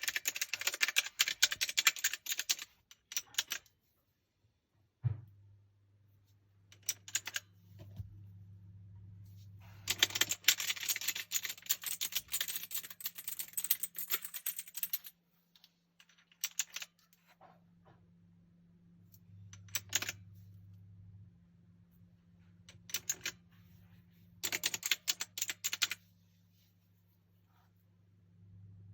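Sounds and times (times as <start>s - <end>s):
mechanical keyboard typing: 0.0s - 3.6s, 6.8s - 7.5s, 9.9s - 15.0s, 16.3s - 17.0s, 19.6s - 20.2s, 22.7s - 23.4s, 24.4s - 26.0s.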